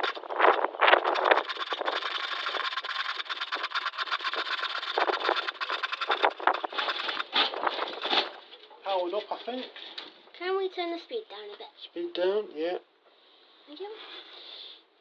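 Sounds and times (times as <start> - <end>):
electric scroll saw running: 1.2 - 7.4.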